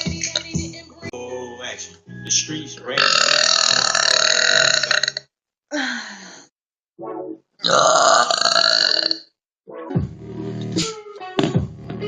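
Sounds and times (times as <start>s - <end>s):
woman burping loudly: 3.0s - 5.3s, 7.6s - 9.4s.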